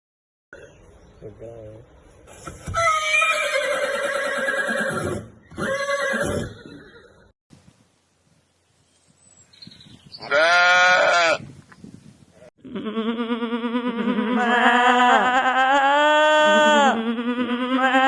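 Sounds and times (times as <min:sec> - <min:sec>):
animal bleat: 0:10.2 - 0:11.4, 0:12.6 - 0:18.0.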